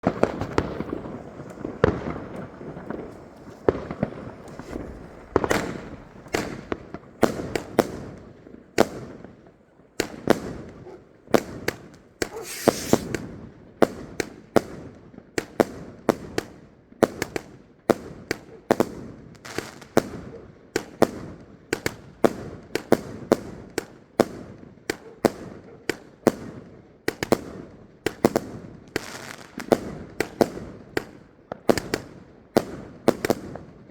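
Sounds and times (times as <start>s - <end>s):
fireworks bangs: 0.0s - 14.9s
fireworks crackling: 0.0s - 18.2s, 27.2s - 33.9s
hissing rush: 12.3s - 13.2s.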